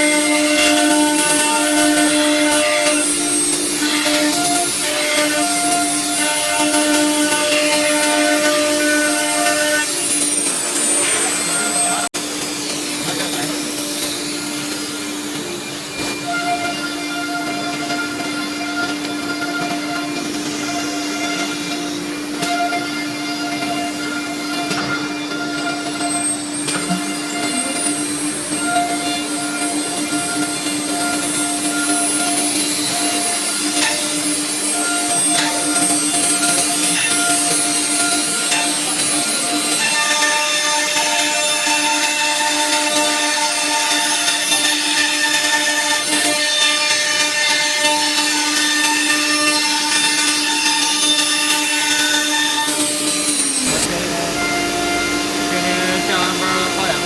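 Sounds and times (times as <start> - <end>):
router machine whine with pulsing tones: 0.0 - 57.0
router spindle whining: 43.6 - 57.0
rough cutting noise: 52.6 - 57.0
even hiss: 53.4 - 57.0.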